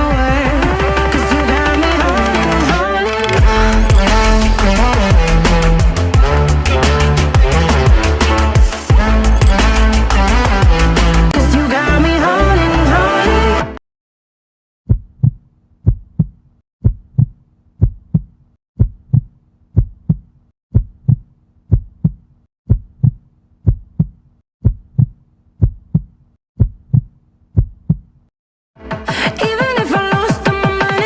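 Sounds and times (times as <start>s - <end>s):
heartbeat thumps: 14.9s - 28.1s.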